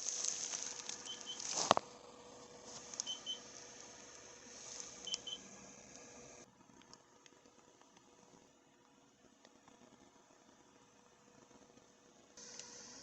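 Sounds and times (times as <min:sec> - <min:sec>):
rustling handling noise: 0:00.0 - 0:01.9, 0:02.5 - 0:06.1
faint steady hum: 0:00.0 - 0:13.0.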